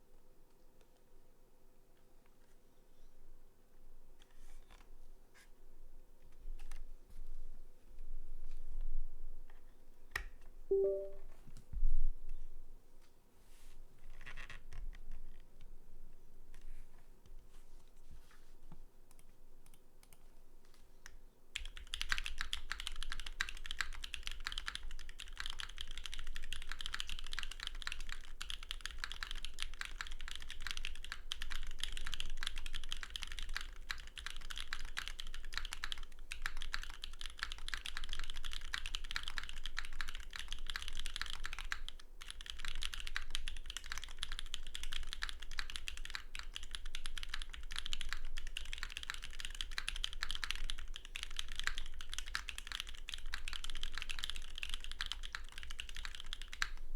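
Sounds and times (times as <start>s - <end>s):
fast typing on mechanical keyboard: 21.6s - 56.9s.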